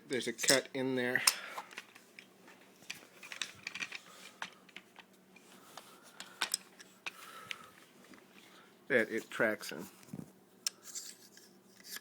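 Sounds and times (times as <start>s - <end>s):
small metal clicks and scrapes: 10.6s - 12.0s.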